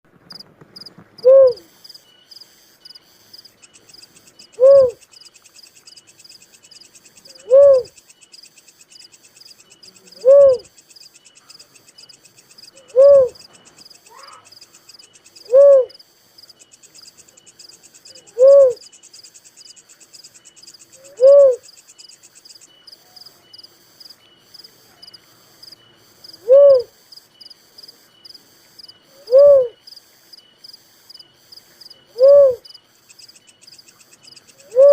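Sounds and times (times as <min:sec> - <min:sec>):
high-pitched insect chirping: 0:00.3 - 0:34.9
dove low hoot: 0:01.2 - 0:01.8, 0:04.5 - 0:05.0, 0:07.3 - 0:08.0, 0:10.0 - 0:10.7, 0:12.7 - 0:13.5, 0:15.4 - 0:16.0, 0:18.1 - 0:18.8, 0:21.0 - 0:21.7, 0:26.4 - 0:27.0, 0:29.1 - 0:29.8, 0:32.1 - 0:32.7, 0:34.6 - 0:34.9.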